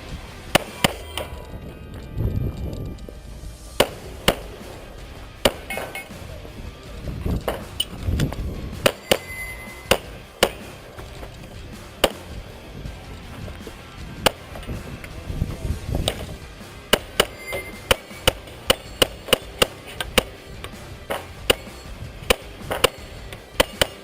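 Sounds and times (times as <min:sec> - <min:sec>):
metallic ring of steel targets: 0:00.5 - 0:02.1, 0:03.7 - 0:15.2, 0:16.0 - 0:24.0
pistol shots: 0:03.8 - 0:06.4, 0:07.4 - 0:12.3, 0:16.0 - 0:24.0.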